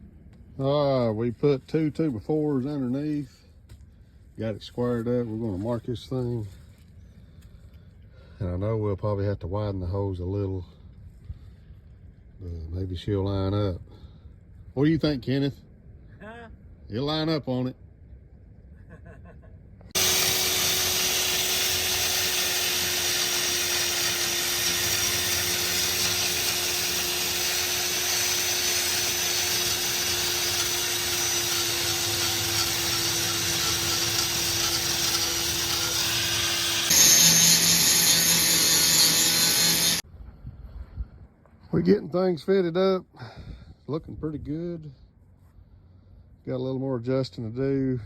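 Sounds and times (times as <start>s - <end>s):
handheld power tool running: 20.0s - 40.0s.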